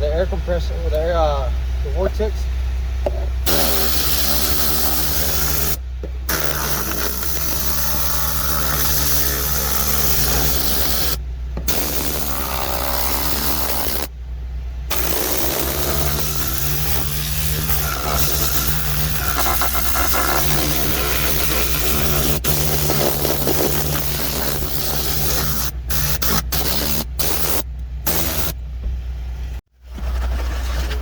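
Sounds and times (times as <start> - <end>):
steady low hum: 0.0 - 31.0
compressed air hissing: 3.4 - 14.1, 14.9 - 28.6.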